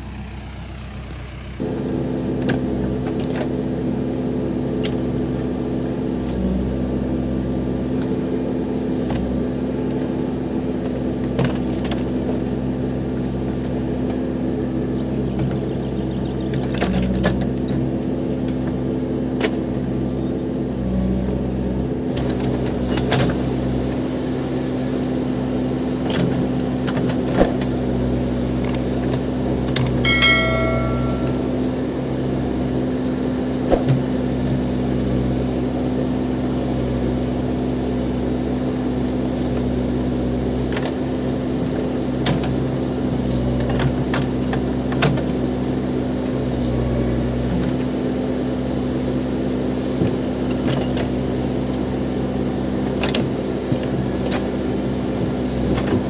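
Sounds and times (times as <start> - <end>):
diesel engine running: 0.0 - 56.0
ringing metallic clang: 30.1 - 31.8.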